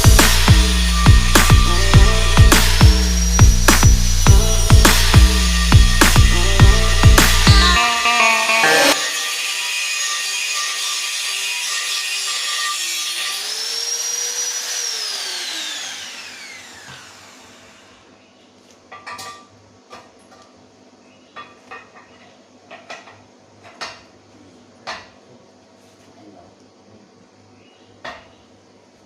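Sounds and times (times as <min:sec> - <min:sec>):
power tool motor whining: 0:00.0 - 0:18.0.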